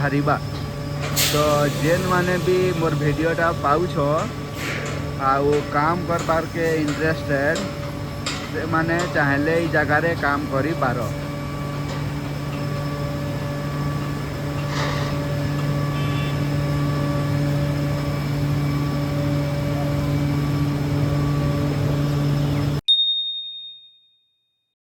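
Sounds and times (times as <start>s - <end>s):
machine hum: 0.0s - 22.8s
high chime: 22.8s - 24.4s.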